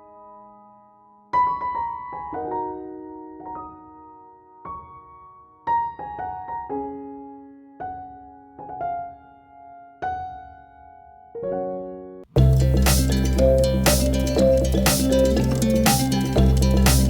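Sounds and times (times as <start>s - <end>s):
soft piano music: 0.0s - 17.0s.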